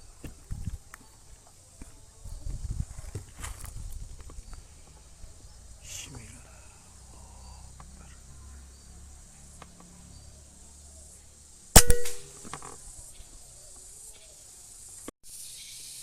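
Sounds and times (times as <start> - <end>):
short metallic ring: 11.8 - 12.5
air rifle shot: 11.8 - 12.6.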